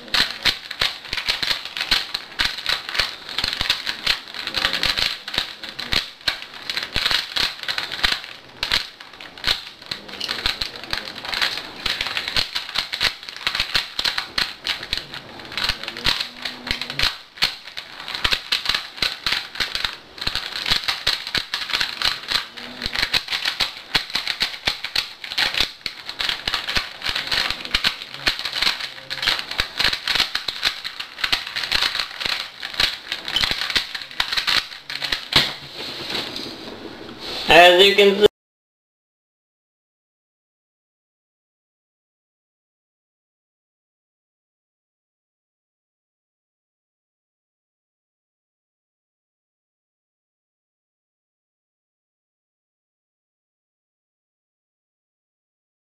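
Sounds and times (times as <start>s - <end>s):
plastic cube layers clicking: 0.0s - 36.5s.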